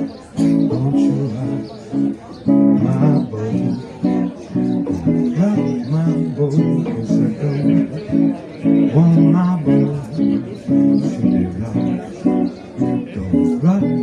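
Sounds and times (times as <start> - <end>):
guitar chopped reggae chords: 0.0 - 14.0.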